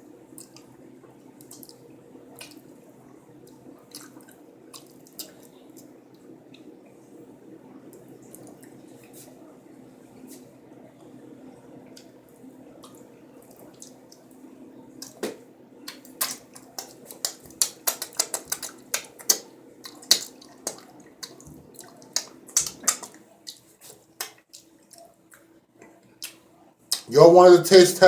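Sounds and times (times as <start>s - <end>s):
faint steady hum: 0.0s - 28.0s
wet chewing and lip-smacking: 1.4s - 2.6s, 3.5s - 6.7s, 12.8s - 14.2s, 15.0s - 15.2s, 15.8s - 27.1s.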